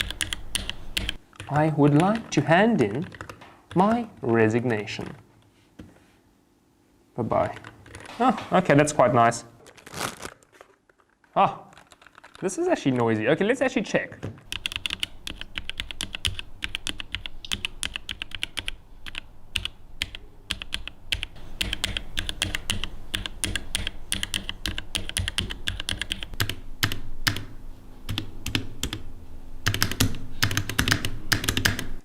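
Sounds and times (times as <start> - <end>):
mechanical keyboard typing: 0.0 - 5.2, 7.4 - 8.1, 11.7 - 12.6, 14.4 - 27.5, 28.1 - 29.0, 29.6 - 32.0.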